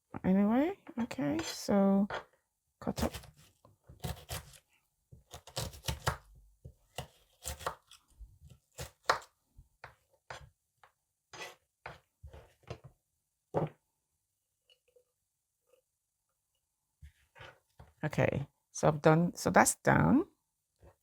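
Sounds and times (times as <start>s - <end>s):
knife chopping onion: 2.9s - 4.6s, 5.2s - 6.3s, 6.9s - 8.0s, 8.7s - 10.5s.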